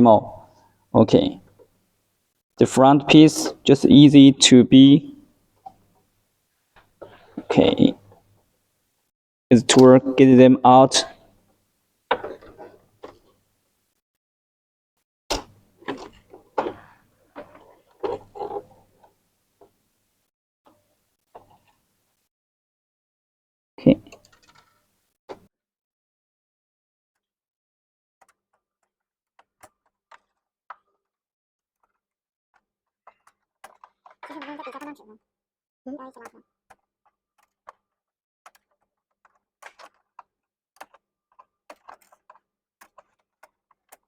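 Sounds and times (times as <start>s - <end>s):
plastic printer parts knocking: 38.5s - 44.0s.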